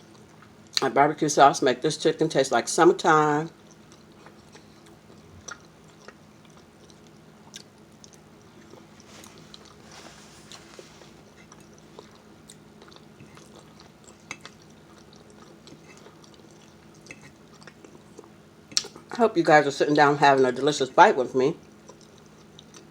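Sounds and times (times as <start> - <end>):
chewing chicken: 0.0 - 0.8, 3.5 - 19.2, 21.6 - 22.9.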